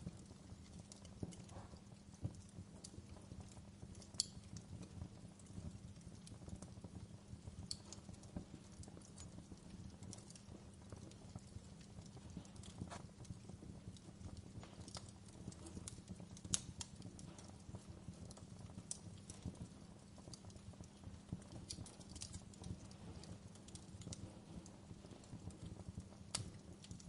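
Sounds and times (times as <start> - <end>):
wood fire crackling: 0.0 - 27.0.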